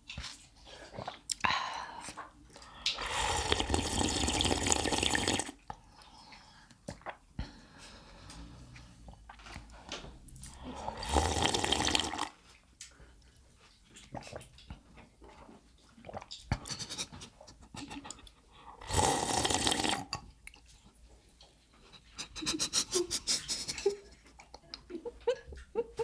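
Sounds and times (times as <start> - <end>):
noodle slurping: 2.2 - 6.1, 7.8 - 12.4, 16.0 - 18.2, 18.8 - 20.2
wet eating smacks: 5.6 - 10.6, 13.6 - 18.3.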